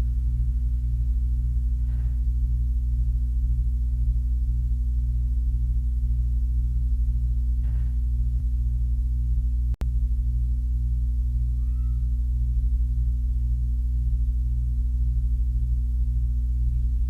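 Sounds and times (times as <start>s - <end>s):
steady low hum: 0.0s - 17.0s
kitten mewing: 11.6s - 12.2s.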